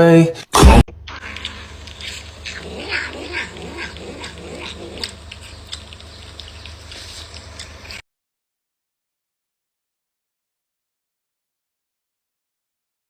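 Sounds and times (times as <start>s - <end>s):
cat calling: 2.4s - 5.2s.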